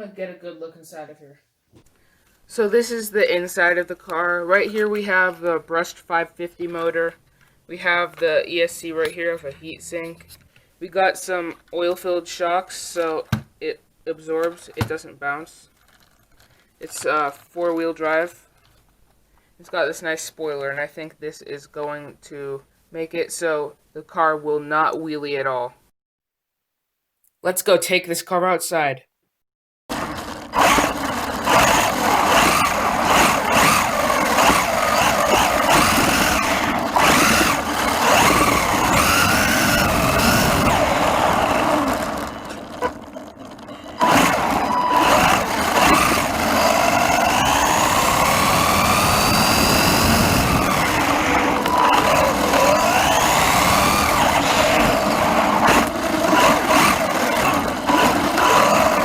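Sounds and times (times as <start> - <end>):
electric motor whining: 29.9 - 59.0.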